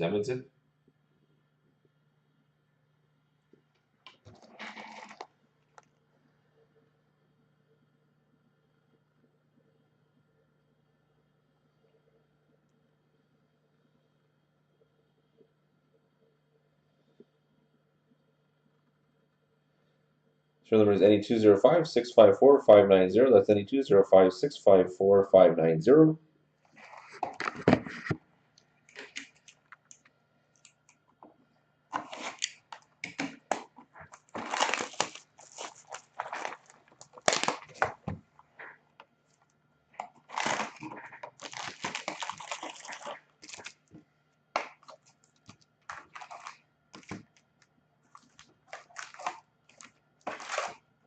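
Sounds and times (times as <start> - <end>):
plastic wrapping tearing and crinkling: 4.3 - 5.2, 31.9 - 38.2, 40.0 - 43.9, 44.6 - 47.3, 48.1 - 50.8.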